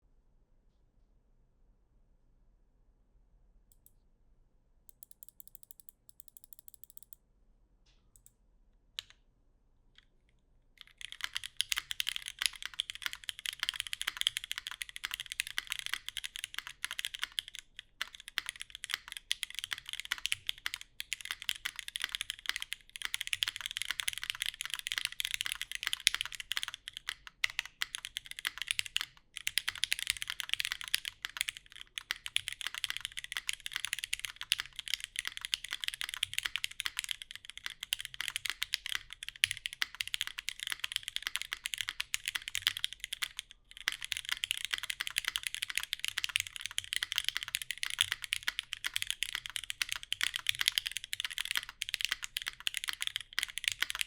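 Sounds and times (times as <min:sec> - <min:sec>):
typing on mechanical keyboard: 0:10.8 - 0:54.0.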